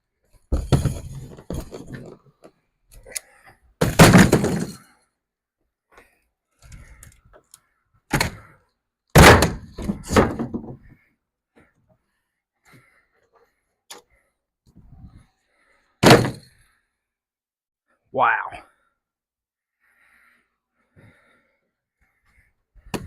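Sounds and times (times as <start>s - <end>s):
wooden thunks: 0.5s - 2.5s, 3.8s - 4.8s, 8.1s - 8.5s, 9.1s - 11.0s, 16.0s - 16.5s
wood clattering: 0.5s - 3.1s, 3.8s - 4.9s, 9.1s - 11.0s, 16.0s - 16.5s
wooden boards cracking: 3.8s - 4.8s, 9.1s - 10.7s.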